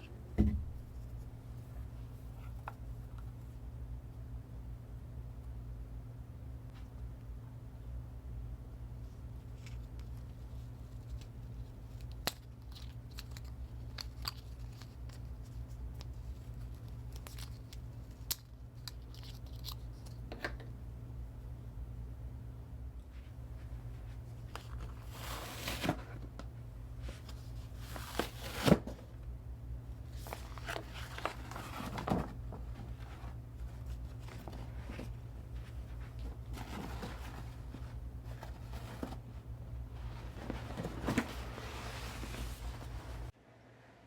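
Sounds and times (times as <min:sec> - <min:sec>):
steady low hum: 0:00.0 - 0:44.0
packaging rustling: 0:30.1 - 0:39.3.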